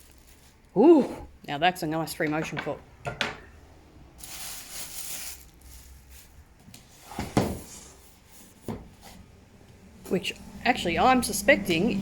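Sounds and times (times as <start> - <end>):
rustling: 0.0 - 1.3, 4.2 - 9.3.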